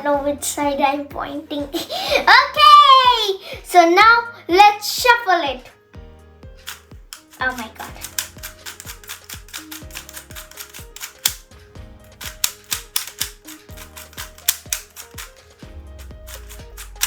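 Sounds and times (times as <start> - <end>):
speed cube clicking: 6.6 - 17.0.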